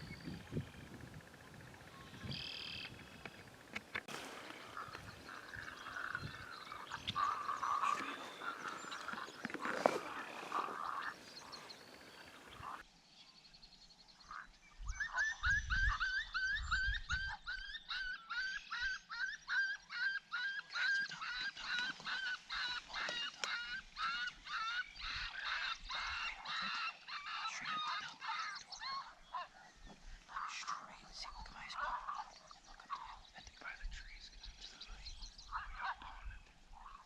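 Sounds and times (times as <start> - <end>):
geese honking: 2.1 - 12.8.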